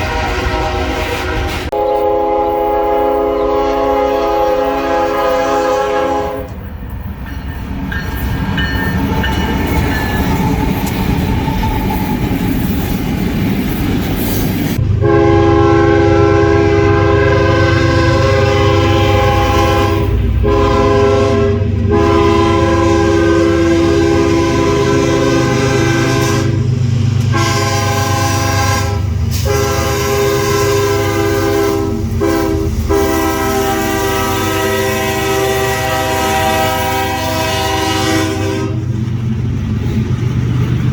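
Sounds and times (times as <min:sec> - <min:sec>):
locomotive air horn chord: 0:00.0 - 0:06.6, 0:14.8 - 0:26.7, 0:27.3 - 0:38.9
train rumbling past: 0:00.0 - 0:40.9
wheels clacking on rail joints: 0:02.6 - 0:14.8, 0:38.8 - 0:40.9.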